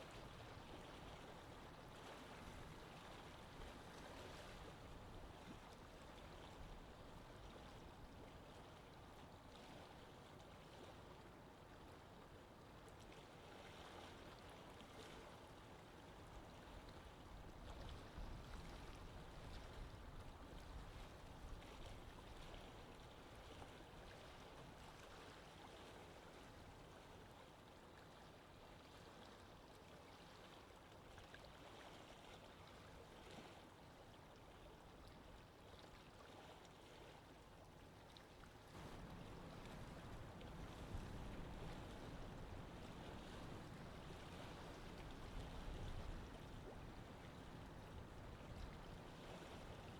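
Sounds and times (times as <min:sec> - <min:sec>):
sea water washing: 0:38.8 - 0:47.8.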